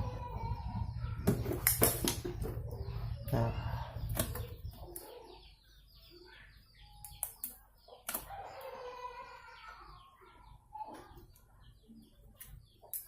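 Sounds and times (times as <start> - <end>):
chickens clucking: 0.0 - 7.0.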